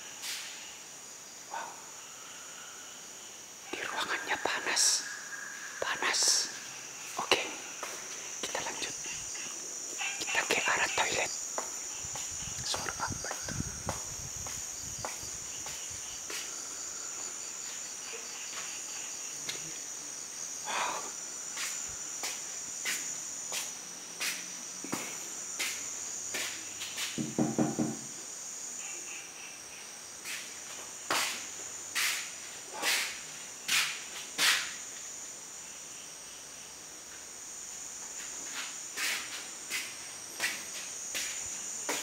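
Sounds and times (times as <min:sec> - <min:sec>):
crickets chirring: 0:00.0 - 0:42.0
footsteps on hard floor: 0:12.8 - 0:16.4, 0:38.2 - 0:42.0.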